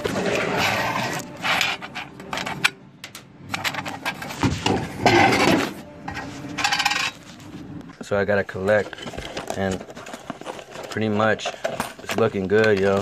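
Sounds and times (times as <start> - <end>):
vending machine clattering: 8.5 - 13.0.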